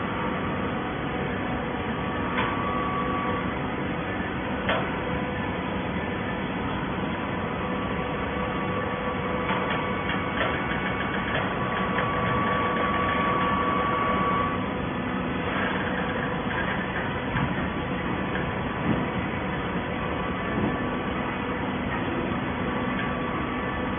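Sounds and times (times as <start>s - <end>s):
baler machine hum: 0.0s - 23.9s
high machine whine: 0.0s - 23.9s
machine clicks and knocks: 9.4s - 12.5s.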